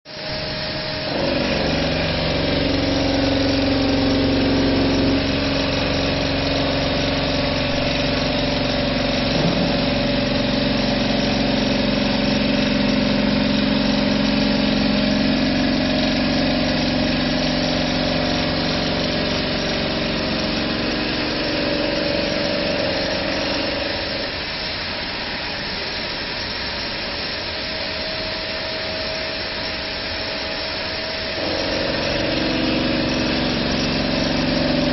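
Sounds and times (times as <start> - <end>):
stone saw machine hum: 0.1 - 34.9.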